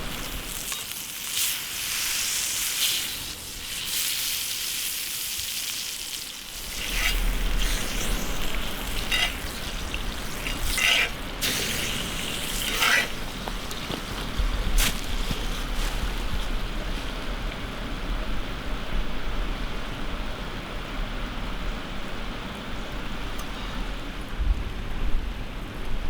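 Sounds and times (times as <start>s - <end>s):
food sizzling in hot fat: 0.0s - 17.1s
sharp clicks or scrapes: 6.6s - 14.1s.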